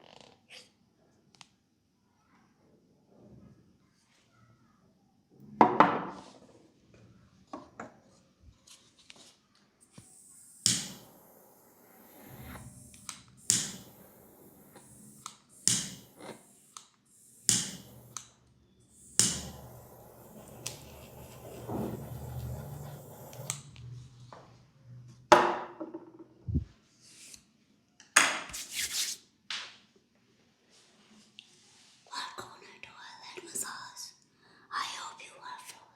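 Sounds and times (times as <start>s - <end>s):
faint rubbing: 8.6s - 18.2s, 18.8s - 24.3s.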